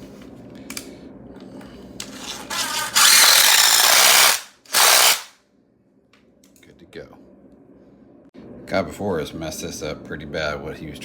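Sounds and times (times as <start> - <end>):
power drill driving a screw: 2.1 - 5.3.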